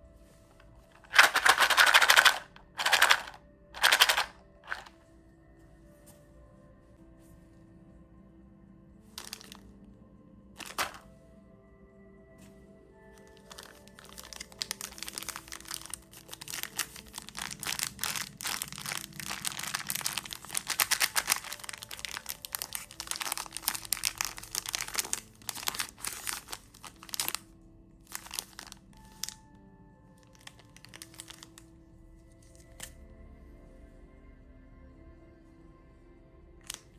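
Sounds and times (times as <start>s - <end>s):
soft background music: 0.0s - 36.9s
plastic wrapper crinkling: 0.9s - 4.9s, 9.2s - 9.6s, 10.6s - 11.0s, 13.2s - 27.5s, 28.1s - 29.4s, 30.2s - 31.6s.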